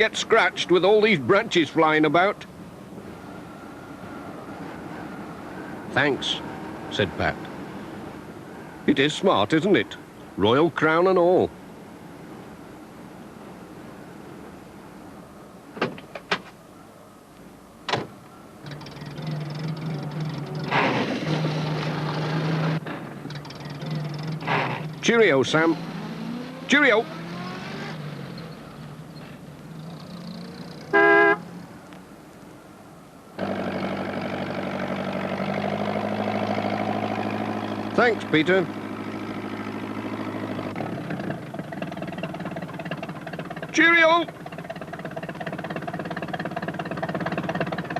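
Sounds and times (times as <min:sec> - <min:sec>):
van engine starting and humming: 0:17.9 - 0:31.9, 0:33.4 - 0:47.9
vehicle horn toot: 0:30.9 - 0:31.5.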